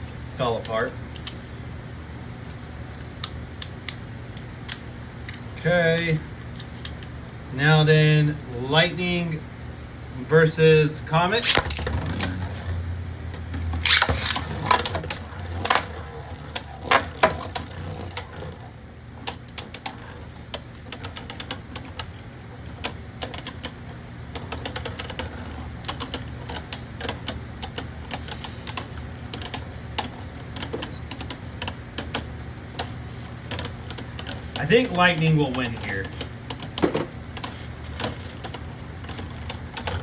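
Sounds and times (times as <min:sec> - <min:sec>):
spinning tops clicking together: 0:13.7 - 0:40.0.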